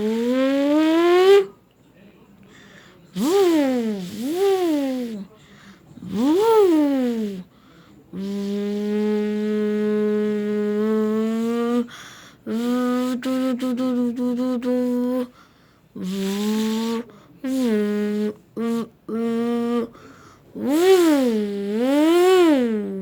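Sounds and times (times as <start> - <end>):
person imitating motorcycle engine: 3.2 - 5.3, 6.0 - 7.4, 8.2 - 11.9, 16.0 - 20.0, 20.6 - 23.0.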